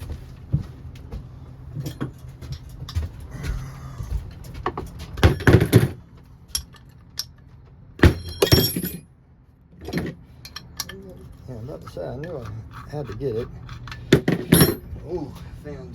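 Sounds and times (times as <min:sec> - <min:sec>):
shop fan humming: 0:00.0 - 0:15.9
metal tools clicking and clattering: 0:04.8 - 0:07.5, 0:08.1 - 0:09.0, 0:09.8 - 0:15.0.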